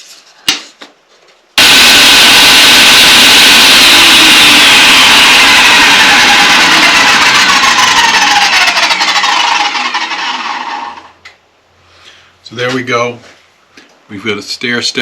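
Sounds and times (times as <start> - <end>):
table saw running and spinning down: 1.6 - 11.2.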